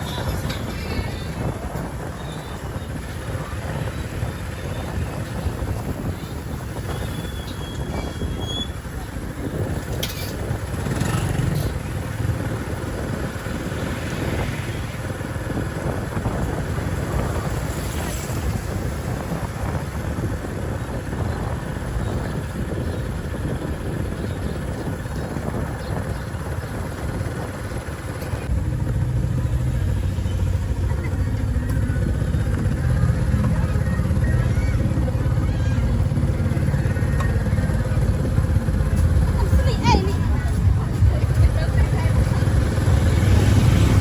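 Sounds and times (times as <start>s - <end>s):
low engine hum: 0.0s - 44.0s
street traffic noise: 0.0s - 44.0s.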